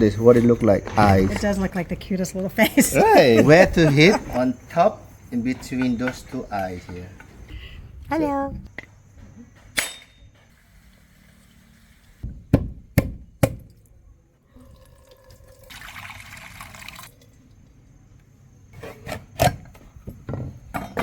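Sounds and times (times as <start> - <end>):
machete knocking on coconut: 12.6 - 13.7
coconut water pouring out: 14.5 - 17.5.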